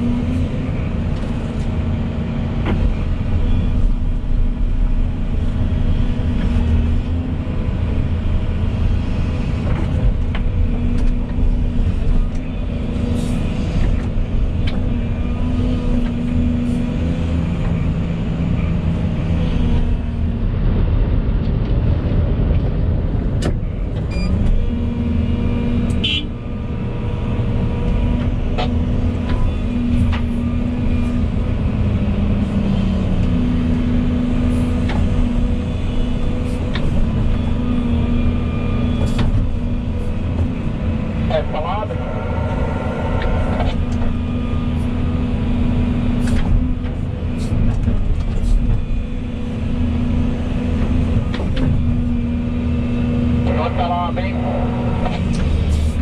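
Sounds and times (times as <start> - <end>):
excavator diesel engine: 0.0 - 56.0
hydraulic whine: 41.3 - 45.0.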